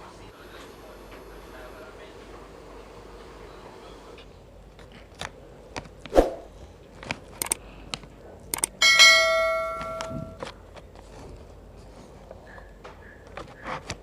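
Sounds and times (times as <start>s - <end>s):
metal or glass dish ringing strike: 8.8s - 10.4s
tableware clicks and knocks: 8.8s - 10.5s.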